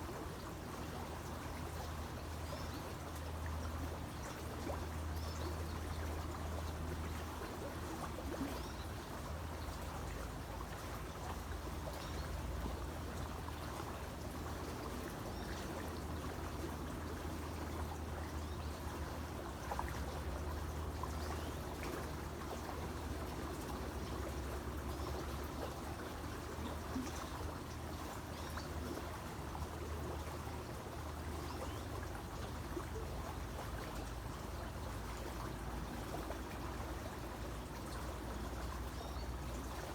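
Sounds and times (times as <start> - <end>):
creek water flowing: 0.0 - 39.9.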